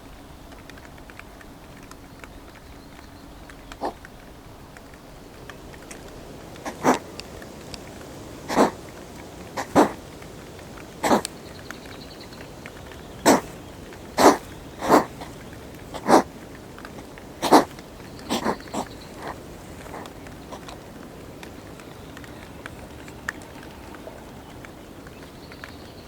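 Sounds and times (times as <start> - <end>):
hedgehogs huffing: 3.7 - 4.1, 5.6 - 24.8.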